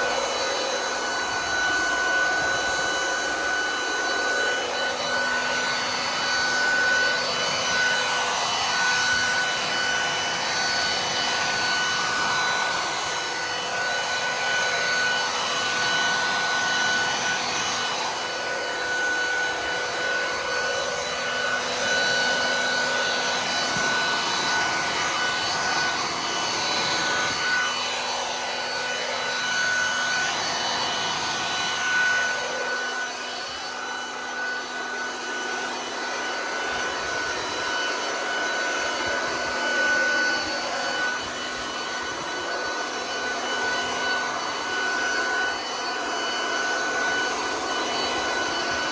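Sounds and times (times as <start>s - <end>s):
leaf vacuum motor whine: 0.0s - 48.9s.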